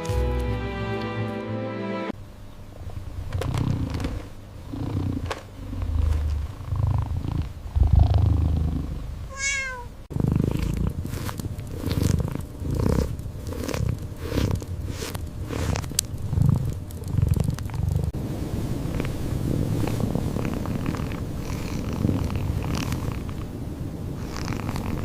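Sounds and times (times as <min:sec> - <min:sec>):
cat purring: 0:03.0 - 0:18.2, 0:18.8 - 0:25.0
cat short pitched call: 0:09.3 - 0:09.9.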